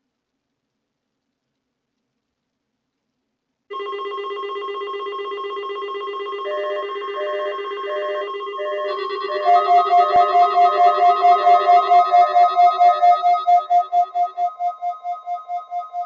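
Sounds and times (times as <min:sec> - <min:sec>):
electronic alert tone: 0:03.7 - 0:16.0
high pulsing beep: 0:05.1 - 0:16.0.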